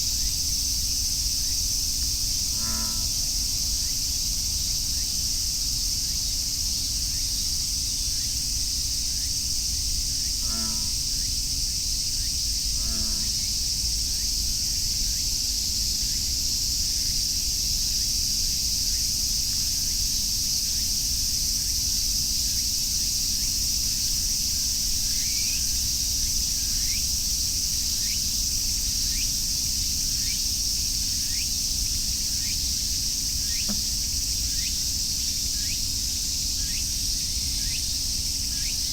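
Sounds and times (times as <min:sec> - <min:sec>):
cicadas droning: 0:00.0 - 0:38.9
bullfrog croaks: 0:02.5 - 0:03.3, 0:10.4 - 0:11.0, 0:12.8 - 0:13.4.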